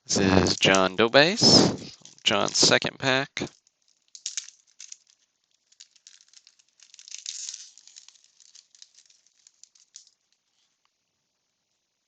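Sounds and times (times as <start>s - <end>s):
wax paper wrapper crackling: 0.2s - 2.8s, 3.4s - 10.8s.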